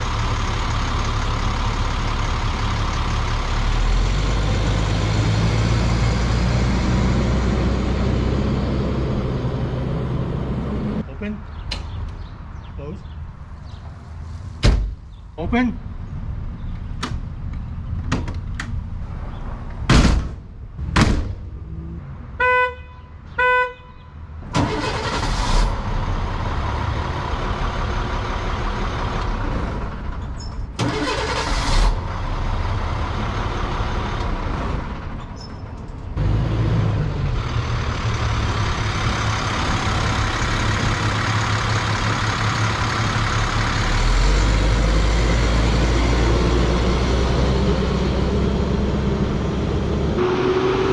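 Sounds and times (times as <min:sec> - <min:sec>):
truck diesel engine running: 0:00.0 - 0:11.0, 0:24.6 - 0:35.2, 0:36.2 - 0:50.5
sharp clicks and knocks: 0:11.7 - 0:12.2, 0:16.7 - 0:18.8
horn honks: 0:22.4 - 0:24.2, 0:50.2 - 0:50.9.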